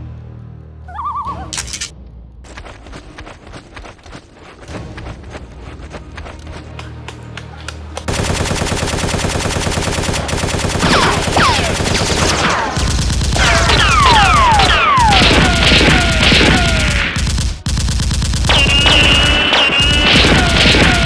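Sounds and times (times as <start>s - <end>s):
automatic gunfire: 8.1s - 21.0s.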